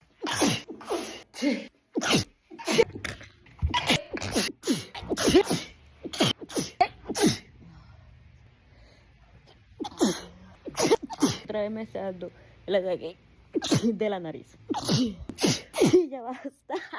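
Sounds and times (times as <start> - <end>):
woman sneezing: 0.2 - 2.9, 3.7 - 7.5, 9.8 - 11.5, 13.5 - 14.0, 14.7 - 16.2.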